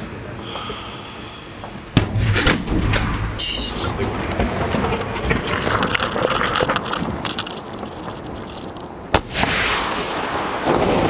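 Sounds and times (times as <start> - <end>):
dense crackling hiss: 0.0 - 11.0
fireworks crackling: 0.0 - 11.0
firework bang: 2.0 - 7.2, 9.1 - 11.0.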